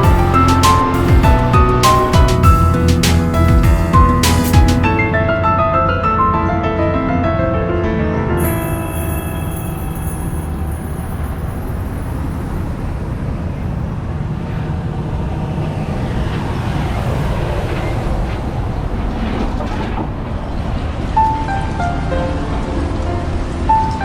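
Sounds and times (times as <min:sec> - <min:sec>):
low rumbling street noise: 0:00.0 - 0:05.2, 0:09.6 - 0:24.0
musical note: 0:00.0 - 0:06.0, 0:08.4 - 0:11.3.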